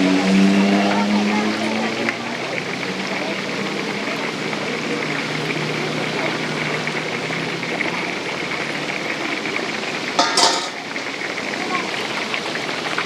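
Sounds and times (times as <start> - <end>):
deep-frying oil hissing: 0.0 - 13.0
loud clatter: 10.2 - 11.2.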